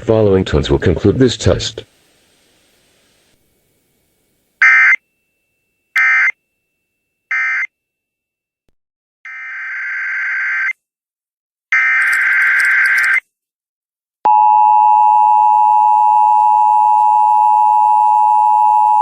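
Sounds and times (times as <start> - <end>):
buzzy digital data tones: 12.0 - 13.2.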